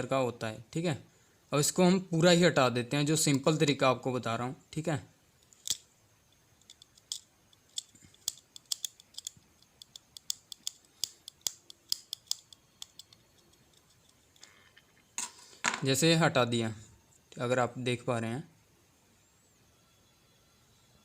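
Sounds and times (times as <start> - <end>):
small tool clicking and scratching: 6.6 - 15.0.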